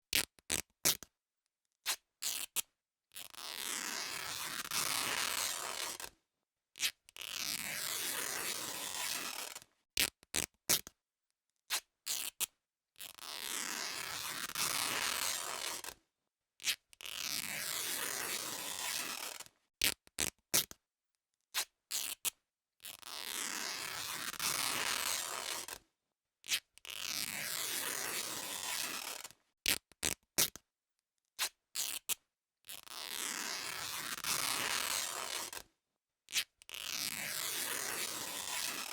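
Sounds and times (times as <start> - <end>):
cloth being ripped: 1.9 - 2.6, 3.2 - 6.1, 6.8 - 10.9, 11.7 - 16.0, 16.6 - 20.8, 21.6 - 25.8, 26.4 - 30.6, 31.4 - 35.6, 36.3 - 38.9.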